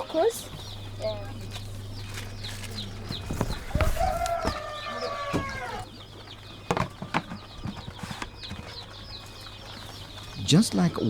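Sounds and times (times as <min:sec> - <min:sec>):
chicks peeping: 0:00.0 - 0:11.0
drawn-out chicken call: 0:02.7 - 0:06.2.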